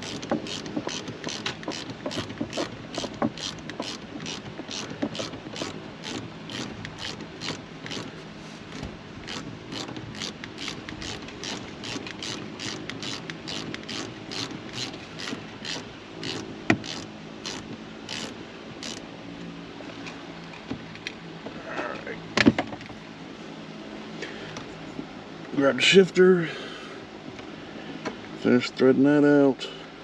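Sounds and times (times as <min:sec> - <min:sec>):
ratchet clicking: 0:00.0 - 0:08.1, 0:09.2 - 0:19.0.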